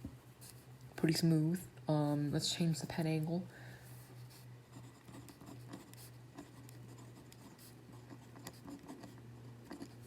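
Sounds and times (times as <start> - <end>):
pencil scratching on paper: 4.3 - 10.0.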